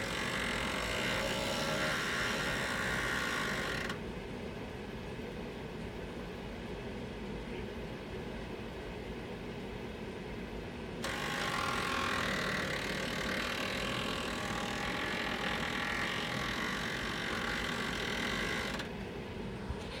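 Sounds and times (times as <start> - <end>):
loud mechanical noise: 0.0 - 4.0, 11.0 - 20.0.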